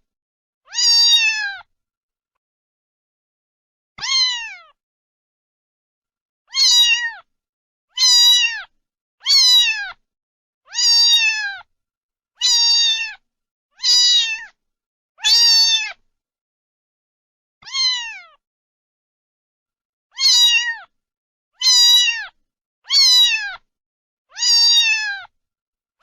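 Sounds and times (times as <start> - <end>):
cat meowing: 0.7 - 1.7, 4.0 - 4.8, 6.5 - 7.3, 8.0 - 10.0, 10.7 - 11.7, 12.4 - 13.2, 13.8 - 14.6, 15.2 - 16.0, 17.6 - 18.4, 20.1 - 20.9, 21.6 - 23.7, 24.3 - 25.3.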